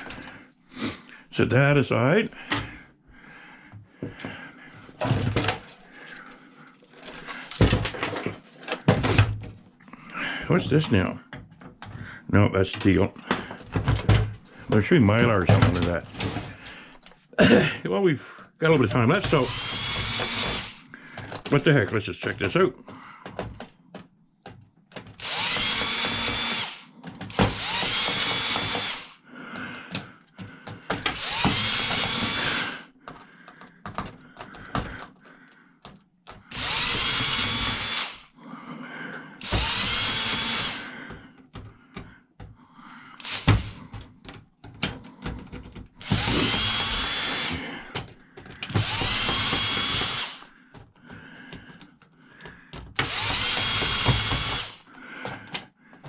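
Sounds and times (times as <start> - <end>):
screws and loose parts rattling: 18.6 - 24.0, 24.8 - 29.2, 29.9 - 38.3, 39.4 - 41.7, 43.2 - 56.0
cordless drill motor whine: 19.1 - 21.4, 25.2 - 29.2, 31.0 - 32.8, 36.5 - 38.3, 39.4 - 41.0, 43.2 - 43.8, 46.0 - 47.9, 48.6 - 50.5, 53.0 - 54.9.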